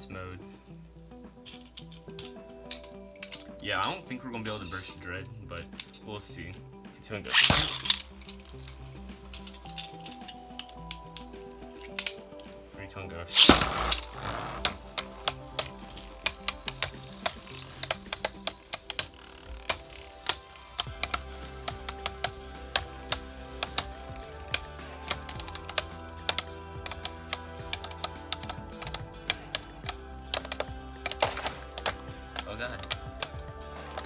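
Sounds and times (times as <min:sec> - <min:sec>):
background music: 0:00.0 - 0:34.0
spinning tops clashing clicks: 0:07.3 - 0:12.6, 0:13.4 - 0:34.0.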